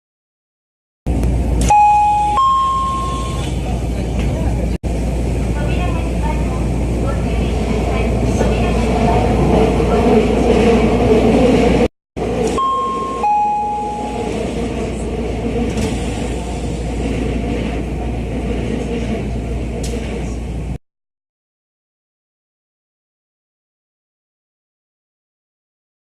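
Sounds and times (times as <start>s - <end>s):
train door chime: 1.6s - 3.6s, 12.5s - 14.4s.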